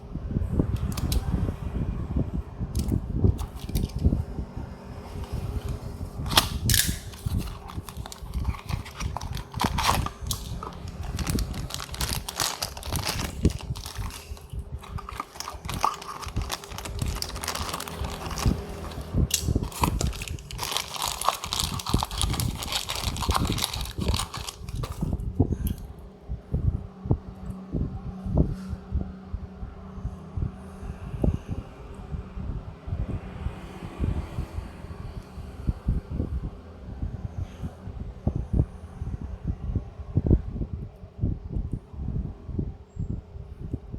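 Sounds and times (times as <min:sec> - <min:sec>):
cardboard and plastic rustling: 0:02.8 - 0:04.1, 0:05.1 - 0:25.3.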